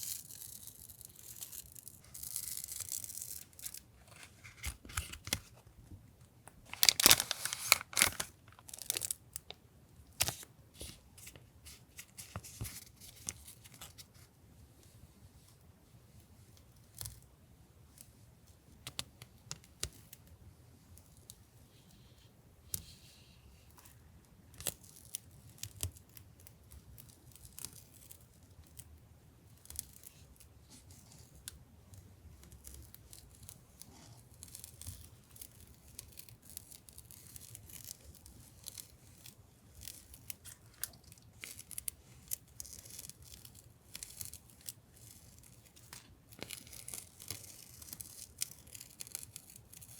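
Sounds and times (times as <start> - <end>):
packaging crinkling and tearing: 0.0 - 5.6, 6.5 - 9.6, 10.2 - 14.0, 34.4 - 49.9.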